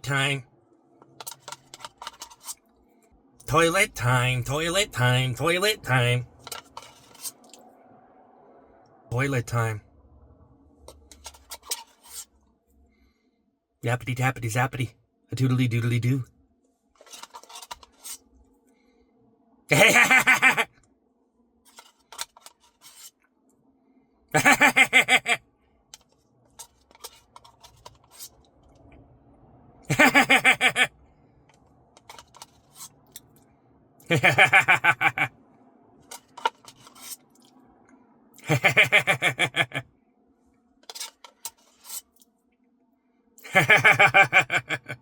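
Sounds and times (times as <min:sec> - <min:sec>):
faint clicks and scrapes: 0:00.9 - 0:03.2, 0:06.3 - 0:07.7, 0:10.8 - 0:12.9, 0:16.9 - 0:18.8, 0:21.6 - 0:23.6, 0:25.9 - 0:29.0, 0:31.4 - 0:33.5, 0:36.0 - 0:38.0, 0:40.4 - 0:42.6
man's voice pulsing bursts: 0:03.5 - 0:06.3, 0:09.1 - 0:09.8.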